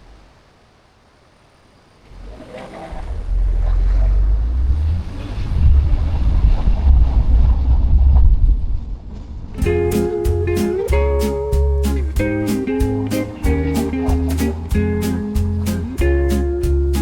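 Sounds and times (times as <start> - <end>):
car road and wind noise: 2.1 - 9.6.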